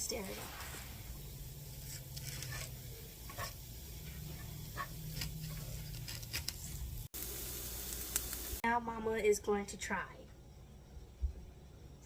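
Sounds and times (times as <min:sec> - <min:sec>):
faint sizzle: 0:00.0 - 0:10.2
spoon scraping a frying pan: 0:01.7 - 0:06.7.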